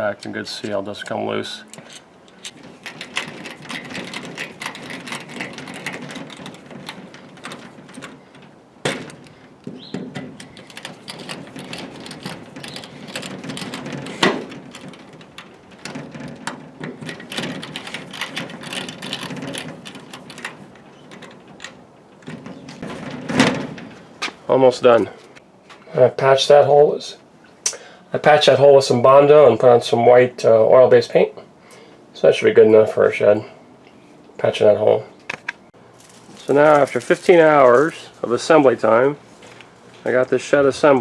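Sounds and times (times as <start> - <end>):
hands rustling on door hardware: 1.8 - 24.5, 35.3 - 38.2.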